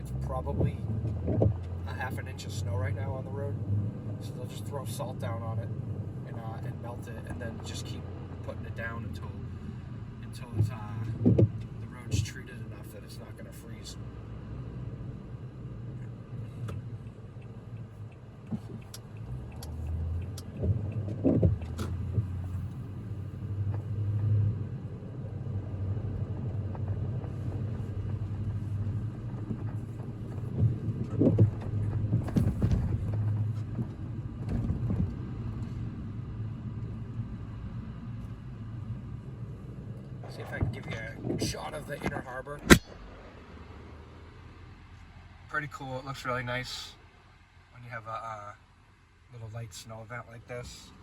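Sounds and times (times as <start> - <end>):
engine and tyres rumbling: 0.0 - 51.0
car knocks and bumps: 0.5 - 1.8, 10.5 - 12.4, 18.4 - 22.4, 28.0 - 35.8.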